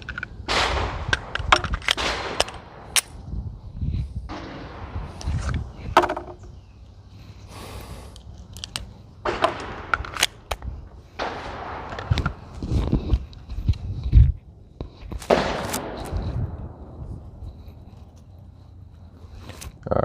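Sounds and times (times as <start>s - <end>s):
low rumbling handling noise: 0.0s - 19.8s
gunshots: 0.4s - 3.2s, 4.3s - 5.5s, 9.2s - 10.5s, 11.2s - 12.6s, 15.2s - 16.8s.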